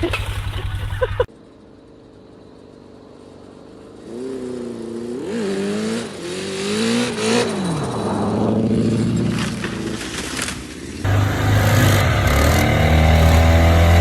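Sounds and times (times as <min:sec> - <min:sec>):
vehicle engine revving: 0:03.9 - 0:14.0.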